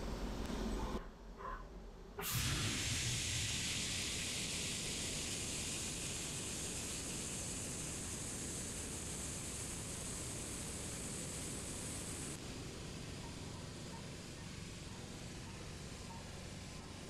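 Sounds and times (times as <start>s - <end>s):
machine tool running: 2.2s - 12.4s
coolant spray hissing: 2.2s - 13.2s.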